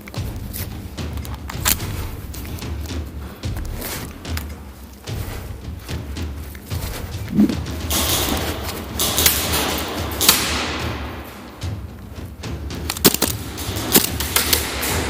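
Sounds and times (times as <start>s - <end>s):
rustling and scuffing: 0.0s - 9.2s
airsoft guns firing: 12.9s - 15.0s.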